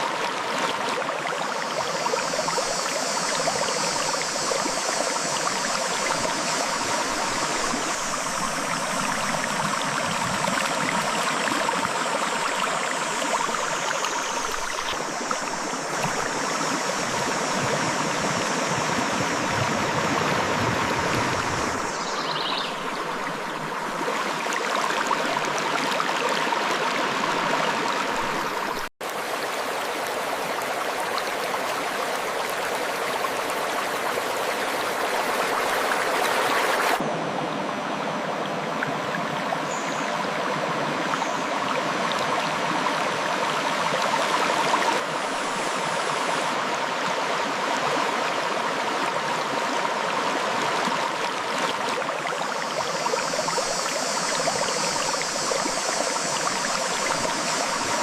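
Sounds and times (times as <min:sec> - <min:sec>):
river water rushing over rocks: 0:22.8 - 0:58.0.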